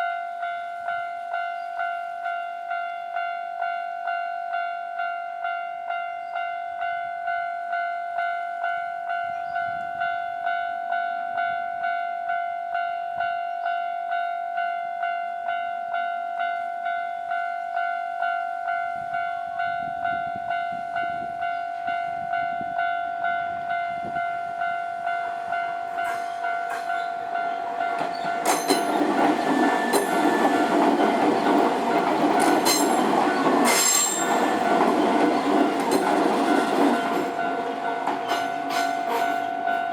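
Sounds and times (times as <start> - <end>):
level crossing warning bell: 0.0 - 39.9
train passing: 16.5 - 39.9
wheels clacking over rail joints: 25.9 - 39.8.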